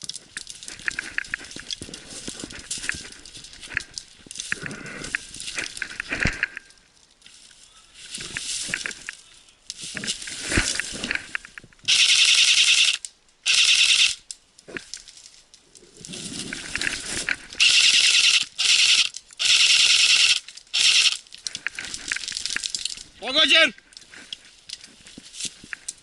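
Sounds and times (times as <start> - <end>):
quiet movement: 0.0 - 11.9, 14.2 - 17.6, 20.4 - 26.0
airsoft rifle firing bursts: 11.9 - 14.2, 17.6 - 21.2.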